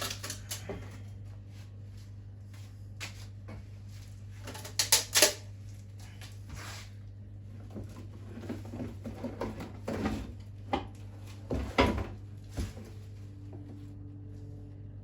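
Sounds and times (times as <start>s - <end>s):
low hum: 12.2s - 15.0s.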